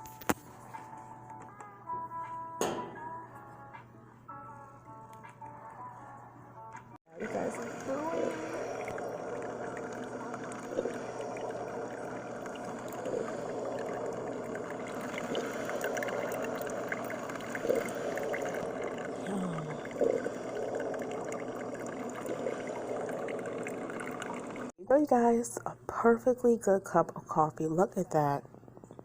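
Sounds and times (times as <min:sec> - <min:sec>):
hot water running through coffee: 0:07.0 - 0:24.8.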